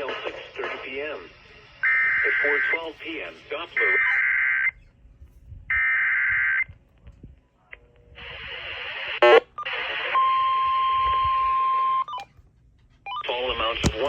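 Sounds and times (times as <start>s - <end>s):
radio hiss: 0.0s - 4.7s, 8.2s - 10.2s
steady warning alert tone: 9.2s - 9.4s
warbling data burst: 9.2s - 9.4s.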